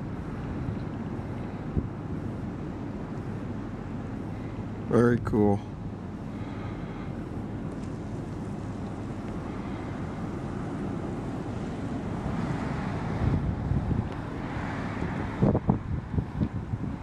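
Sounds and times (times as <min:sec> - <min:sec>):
wind blowing across microphone: 0:07.6 - 0:17.0.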